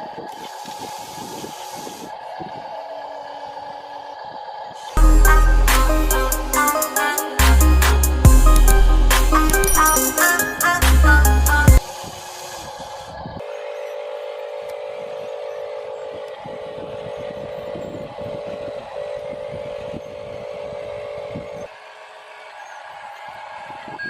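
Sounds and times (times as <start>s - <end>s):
steady motor drone: 0.0s - 24.0s
background music: 5.0s - 11.8s.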